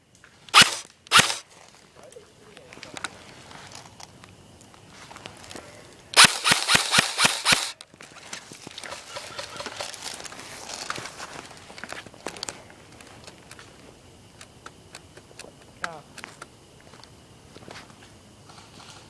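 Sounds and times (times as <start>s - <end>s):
faint clicks and rustling: 0.1s - 19.0s
airsoft gun shots: 0.6s - 1.4s, 6.2s - 7.8s.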